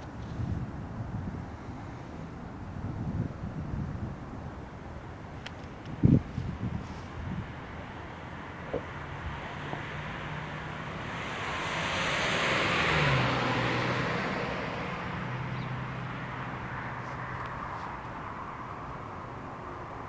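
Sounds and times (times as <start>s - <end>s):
vehicle passing by: 6.0s - 20.0s.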